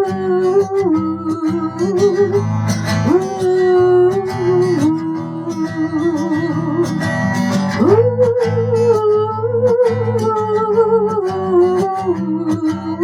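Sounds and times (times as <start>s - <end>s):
acoustic guitar chords: 0.0s - 13.0s.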